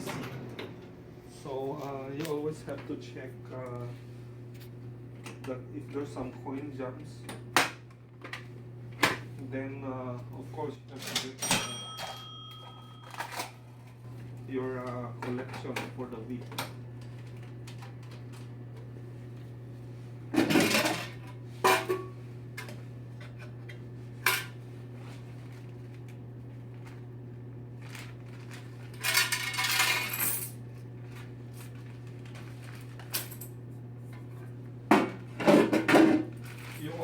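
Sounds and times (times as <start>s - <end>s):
steady low hum: 0.0s - 10.9s
coins clinking and clattering: 29.0s - 30.6s.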